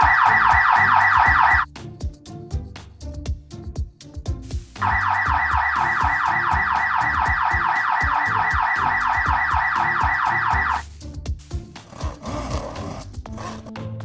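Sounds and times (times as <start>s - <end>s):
electronic alarm warble: 0.0s - 1.6s, 4.8s - 10.8s
background music with a beat: 0.0s - 14.0s.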